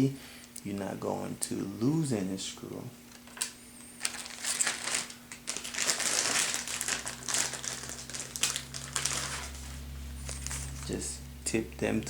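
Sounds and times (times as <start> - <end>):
adhesive tape crinkling: 3.2 - 11.0.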